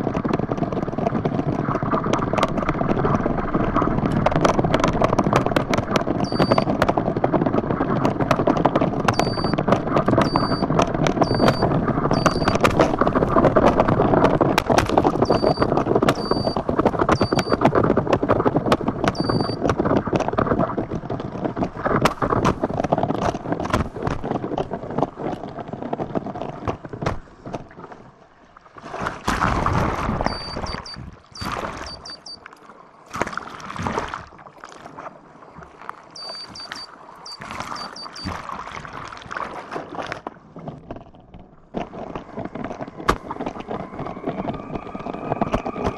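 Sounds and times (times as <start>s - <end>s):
board slapping on water: 0.0s - 41.1s, 41.7s - 45.9s
water rushing under board: 0.0s - 45.9s
short high beeps: 6.2s - 6.7s, 9.1s - 9.6s, 10.2s - 12.6s, 15.2s - 16.6s, 17.2s - 17.6s, 19.2s - 19.6s, 30.3s - 32.4s, 36.2s - 38.4s.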